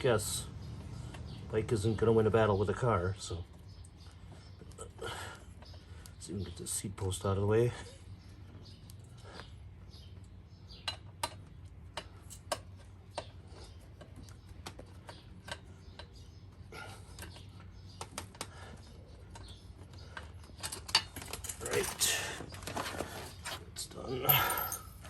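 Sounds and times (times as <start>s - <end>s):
hand tools clicking and clinking: 24.2s - 25.0s.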